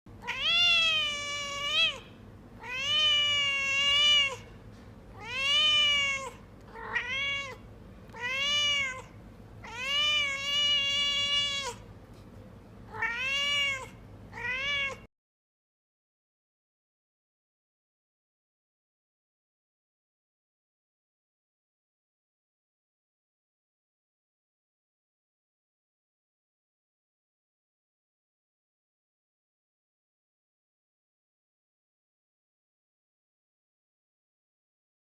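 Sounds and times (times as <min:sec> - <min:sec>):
cat meowing: 0:00.2 - 0:04.5, 0:05.1 - 0:11.8, 0:12.9 - 0:15.1.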